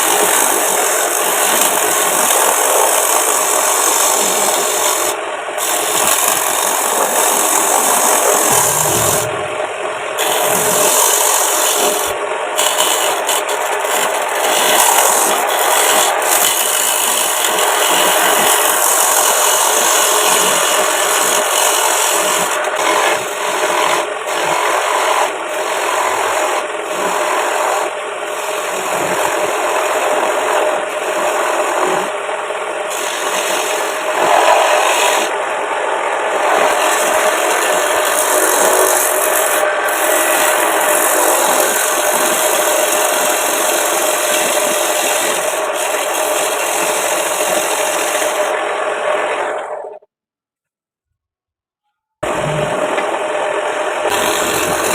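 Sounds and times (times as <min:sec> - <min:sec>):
tool scraping spinning wood: 0:00.0 - 0:35.4, 0:36.2 - 0:50.0, 0:52.2 - 0:54.9.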